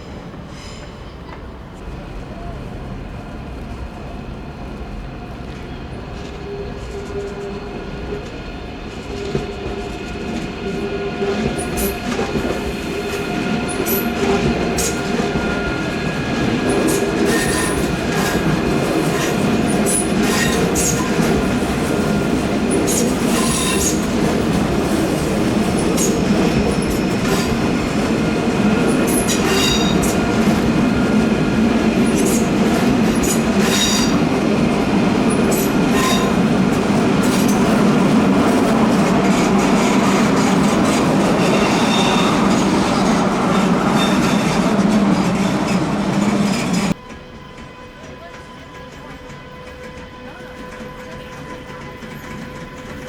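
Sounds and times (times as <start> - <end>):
train wheels clacking on track: 5.4 - 53.0
train wheel flanges squealing: 9.0 - 28.1, 28.7 - 31.3, 32.0 - 34.4, 35.3 - 36.5, 39.3 - 53.0.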